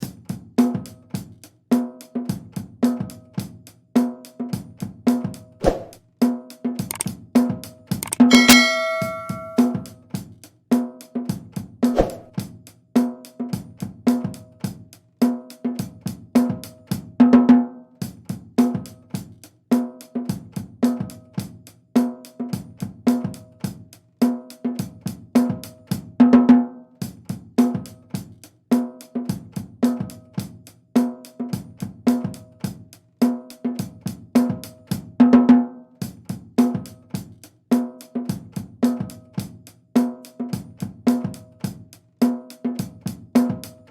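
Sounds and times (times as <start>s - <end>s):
drum kit beat: 6.8s - 10.0s, 11.8s - 12.6s.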